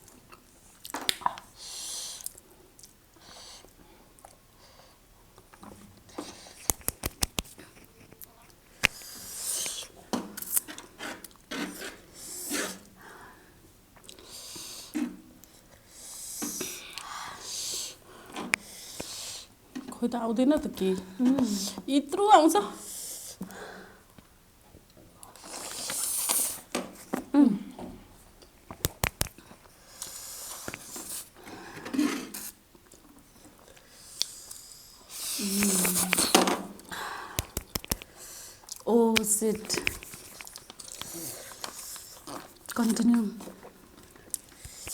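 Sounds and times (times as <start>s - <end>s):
slurping and chewing noodles: 5.5s - 13.0s, 14.0s - 19.6s, 25.2s - 26.7s, 29.0s - 38.9s, 39.6s - 44.9s
small wet mouth clicks: 6.5s - 10.7s, 28.7s - 31.3s, 33.7s - 44.9s
hissing noodle slurps: 8.9s - 12.9s, 25.4s - 26.7s, 29.8s - 31.4s, 33.9s - 38.6s
utensil clicking against bowl: 37.4s - 38.1s.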